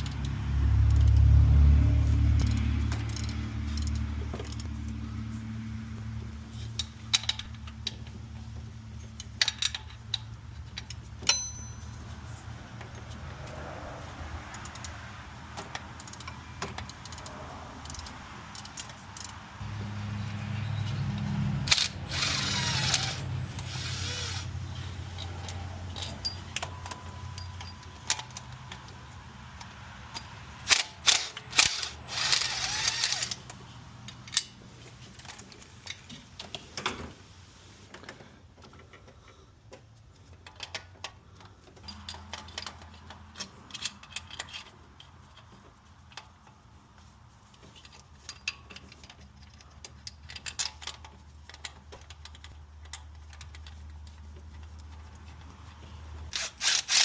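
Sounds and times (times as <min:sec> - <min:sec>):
tools clicking and clanking: 0:00.0 - 0:01.4, 0:02.3 - 0:05.0, 0:06.5 - 0:13.7, 0:14.4 - 0:19.6, 0:20.8 - 0:37.2, 0:37.8 - 0:57.0
rasping bursts: 0:21.6 - 0:25.4, 0:30.6 - 0:33.5, 0:56.3 - 0:57.0.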